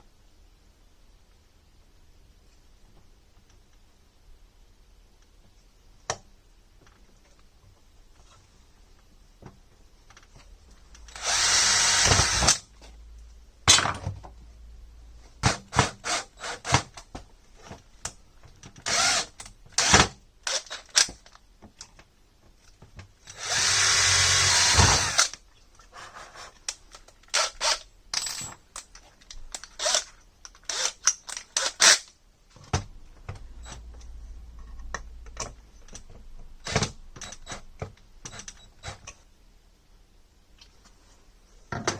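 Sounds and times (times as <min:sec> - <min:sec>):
power drill running: 0:11.1 - 0:12.6, 0:18.9 - 0:19.9, 0:23.3 - 0:25.3.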